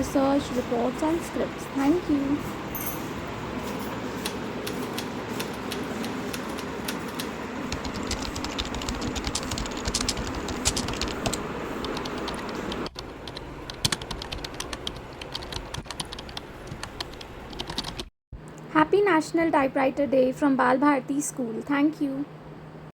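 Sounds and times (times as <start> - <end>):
typewriter keys clicking: 4.2 - 18.1.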